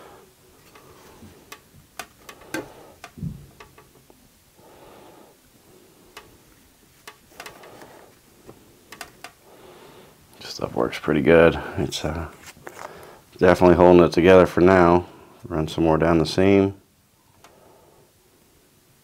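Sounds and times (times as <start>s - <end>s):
soft breathing: 0.0s - 1.6s, 2.2s - 3.5s, 4.6s - 6.6s, 7.3s - 10.3s, 12.6s - 13.3s, 17.2s - 18.6s.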